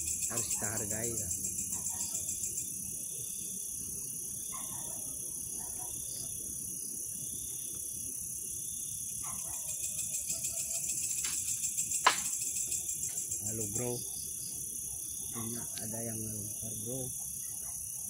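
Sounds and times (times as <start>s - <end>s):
night insects chirring: 0.0s - 18.0s
sharp knock: 12.0s - 12.3s.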